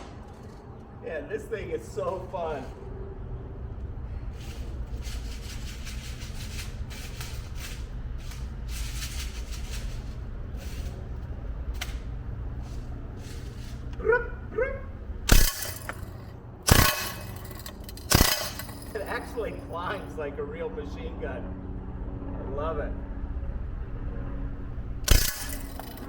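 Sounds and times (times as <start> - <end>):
steady low hum: 0.0 - 26.0
bb gun rapid fire: 15.3 - 19.4, 25.1 - 26.0
bbs clattering into trap: 15.3 - 19.4, 25.1 - 26.0
sharp crack: 15.3 - 19.6, 25.1 - 26.0.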